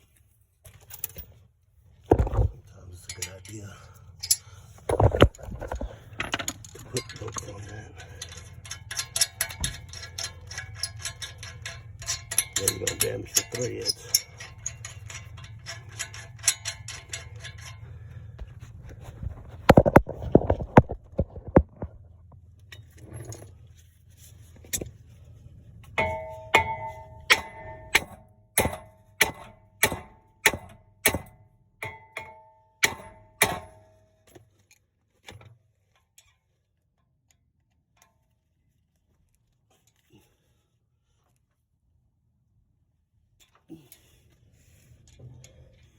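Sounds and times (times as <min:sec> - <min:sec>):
hammer striking metal: 0:26.0 - 0:33.8.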